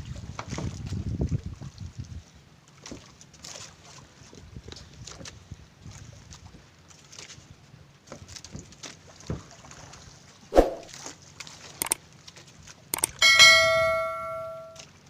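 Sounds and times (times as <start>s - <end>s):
sharp thump: 10.6s - 10.9s
metal object ringing like a bell: 13.0s - 14.8s.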